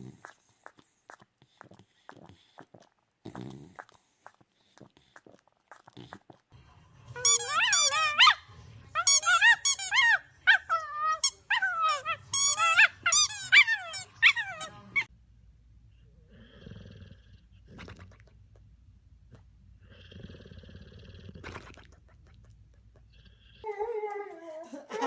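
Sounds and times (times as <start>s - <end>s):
dog whining and yowling: 7.2s - 8.4s, 9.0s - 14.6s.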